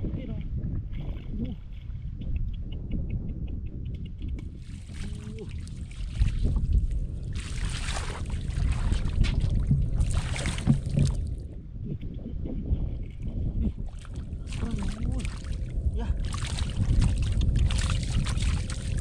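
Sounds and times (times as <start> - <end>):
low rumble: 0.0 - 19.0
water splashing and sloshing: 4.6 - 11.4, 13.0 - 19.0.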